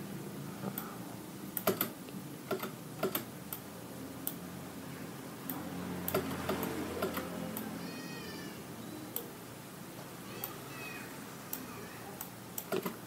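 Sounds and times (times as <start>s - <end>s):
faint steady hum: 0.0s - 13.0s
computer mouse and keyboard clicks: 11.6s - 13.0s.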